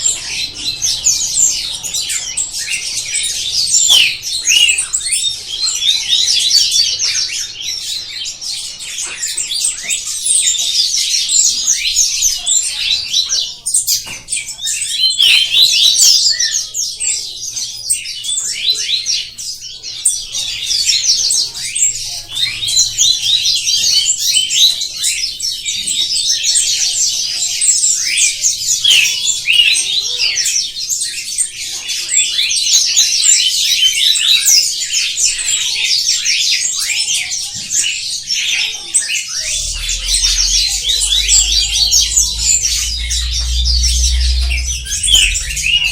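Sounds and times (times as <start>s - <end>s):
many small birds chirping: 39.2s - 45.9s.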